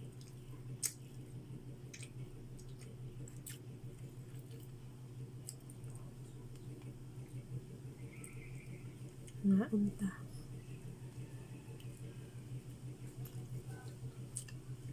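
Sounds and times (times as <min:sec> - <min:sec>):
person chewing food: 0:00.0 - 0:06.9, 0:12.7 - 0:14.9.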